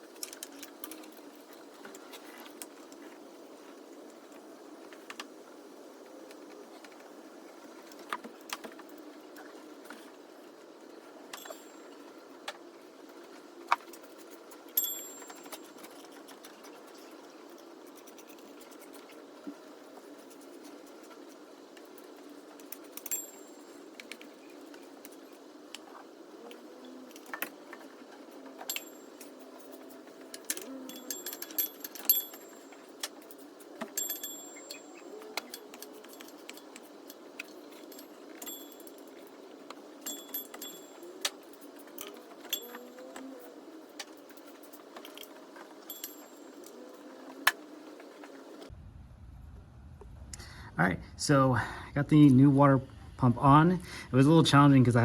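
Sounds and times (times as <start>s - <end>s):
steady background hum: 0.0s - 55.0s
metallic tool clinks: 11.3s - 12.0s, 14.8s - 15.8s, 28.7s - 29.5s, 30.9s - 33.0s, 33.9s - 36.8s, 37.7s - 39.2s, 40.0s - 41.1s, 45.9s - 46.6s.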